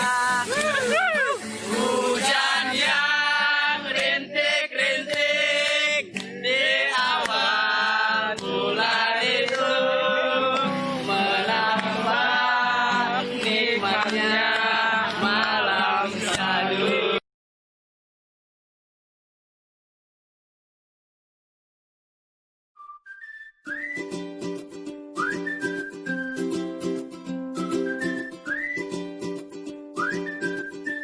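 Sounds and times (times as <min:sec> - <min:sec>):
person singing: 0:00.0 - 0:17.2.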